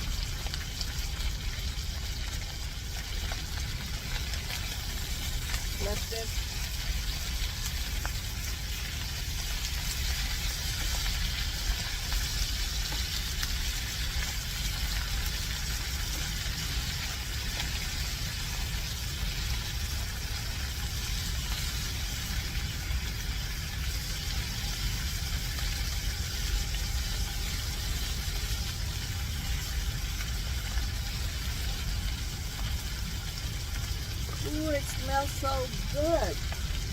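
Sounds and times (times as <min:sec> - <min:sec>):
fish sizzling in hot oil: 0:00.0 - 0:36.9.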